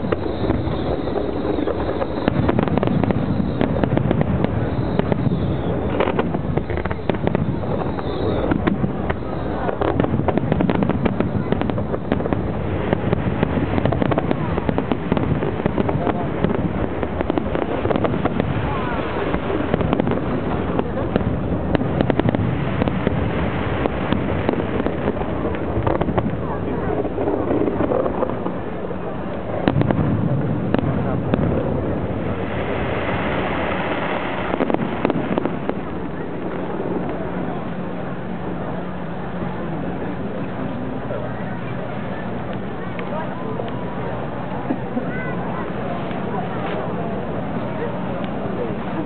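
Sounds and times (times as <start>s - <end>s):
crowd chatter: 0.0s - 49.0s
fireworks bursting and crackling: 0.0s - 49.0s.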